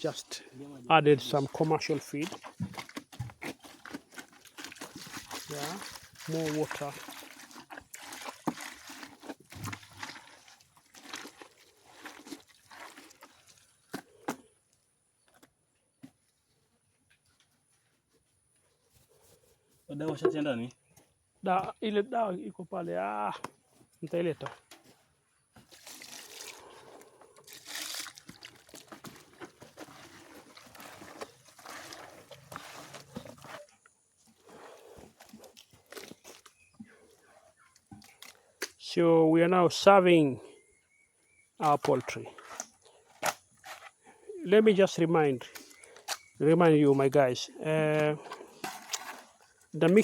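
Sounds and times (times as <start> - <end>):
wet mash squelching: 1.3 - 14.3, 25.7 - 33.7, 47.9 - 50.0.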